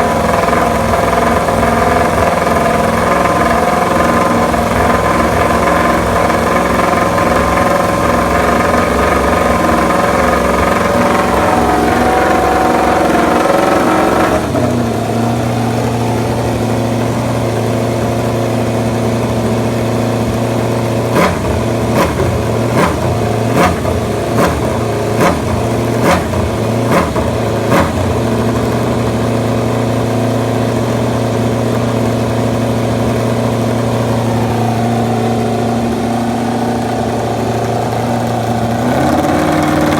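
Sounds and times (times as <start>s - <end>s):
engine revving sharply: 0.0s - 16.7s, 21.1s - 28.3s, 35.8s - 39.9s
motorcycle engine idling: 0.0s - 39.9s.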